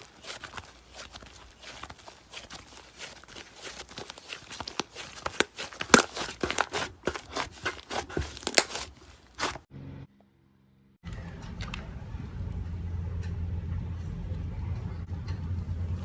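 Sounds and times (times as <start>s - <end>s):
slime crackling and popping: 0.0s - 9.6s.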